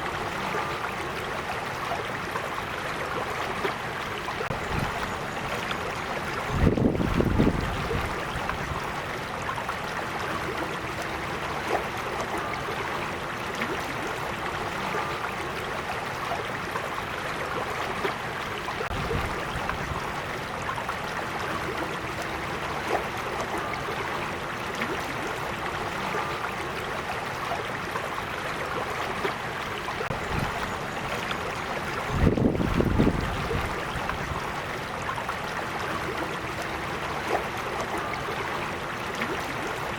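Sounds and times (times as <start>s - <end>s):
creek water flowing: 0.0s - 39.9s.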